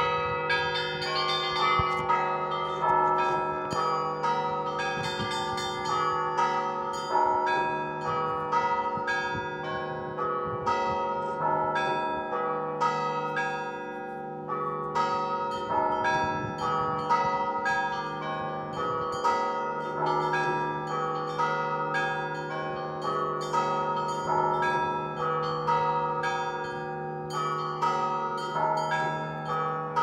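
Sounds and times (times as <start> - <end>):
large church bells tolling: 0.0 - 30.0
small church bells ringing rapidly: 0.0 - 30.0.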